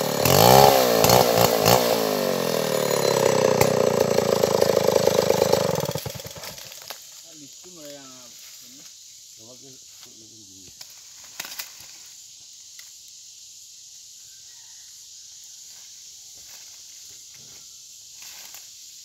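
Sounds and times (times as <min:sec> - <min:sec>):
high-pitched insect chorus: 0:05.6 - 0:19.0.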